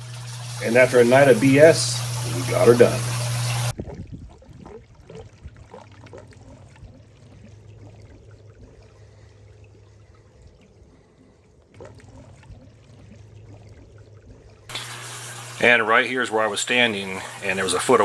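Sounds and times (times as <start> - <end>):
steady low hum: 0.0 - 4.0
water trickling and pouring: 0.0 - 18.0.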